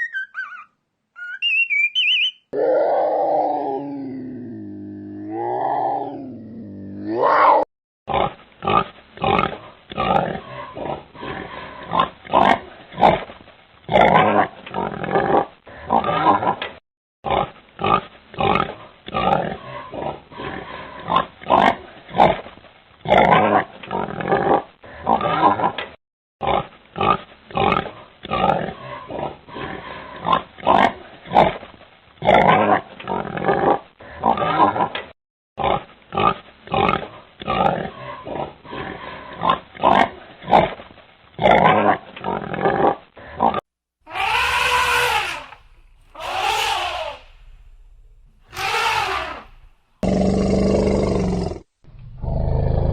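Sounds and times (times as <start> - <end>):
animal's gliding call: 0.0 - 2.4, 44.1 - 49.8
pig grunting: 2.6 - 13.3, 17.3 - 22.4, 26.4 - 31.6, 35.6 - 40.8, 41.4 - 52.9.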